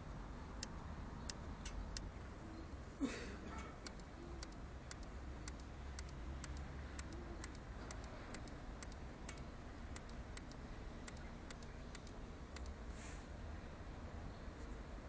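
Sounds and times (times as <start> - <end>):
low steady hum: 0.0 - 15.0
side mirror creaking ticks: 3.8 - 12.8.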